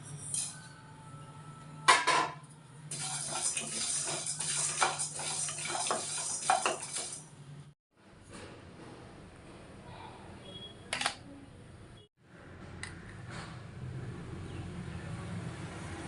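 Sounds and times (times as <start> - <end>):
metal utensils clattering: 2.9 - 7.3
utensils scraping and clinking: 2.9 - 7.3.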